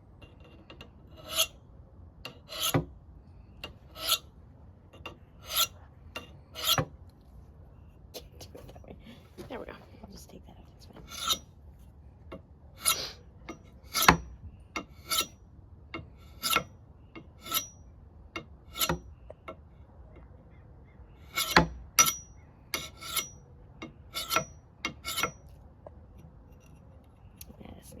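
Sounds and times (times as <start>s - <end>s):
hatchet scraping through knife sharpener: 1.1s - 1.6s, 2.3s - 2.8s, 3.6s - 4.3s, 5.4s - 6.9s, 11.1s - 11.4s, 12.8s - 15.4s, 16.2s - 16.7s, 17.4s - 17.8s, 21.2s - 23.4s, 24.1s - 25.5s
high metallic ring: 17.4s - 17.9s, 21.4s - 23.4s.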